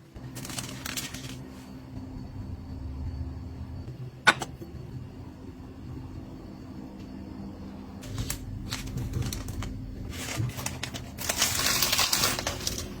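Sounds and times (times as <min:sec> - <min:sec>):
steady low hum: 0:00.0 - 0:13.0
packaging crinkling: 0:00.2 - 0:01.5, 0:08.0 - 0:13.0.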